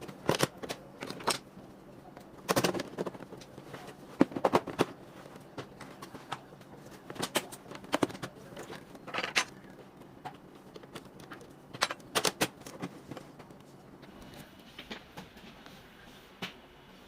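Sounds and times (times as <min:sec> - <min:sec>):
clicks and taps of plastic parts: 0:00.0 - 0:01.5, 0:02.1 - 0:13.8.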